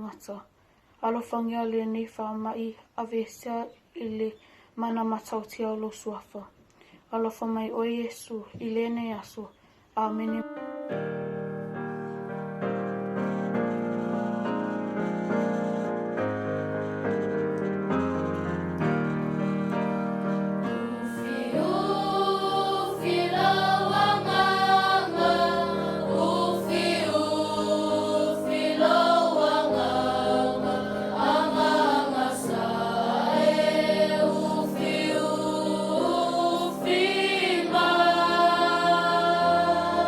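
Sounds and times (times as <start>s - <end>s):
sustained keyboard chords: 10.5s - 40.0s
group singing a hymn: 20.2s - 40.0s.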